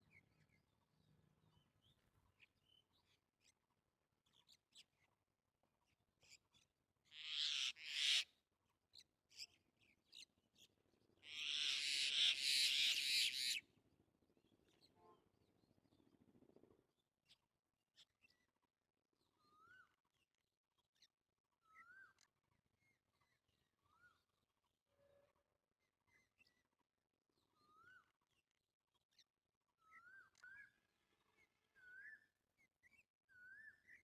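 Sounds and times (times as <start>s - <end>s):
harsh bird calls: 11.3s - 13.6s.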